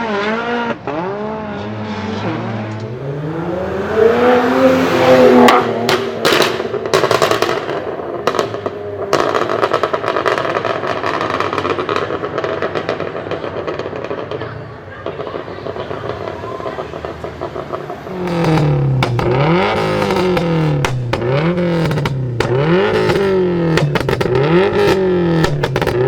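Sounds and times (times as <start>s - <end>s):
car engine revving: 0.0s - 11.2s, 15.7s - 26.0s
exhaust bangs and pops: 5.3s - 26.0s.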